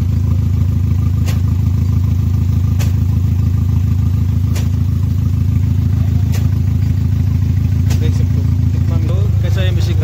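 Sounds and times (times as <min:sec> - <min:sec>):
car engine idling with misfire: 0:00.0 - 0:10.0.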